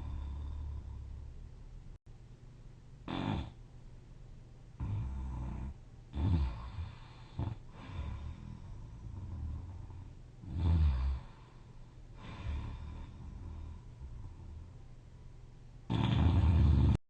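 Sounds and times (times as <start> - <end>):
person snoring: 0.0 - 1.2, 3.1 - 3.6, 4.8 - 11.6, 12.2 - 14.7, 15.9 - 17.0
loud snorts: 3.1 - 3.6, 15.9 - 17.0.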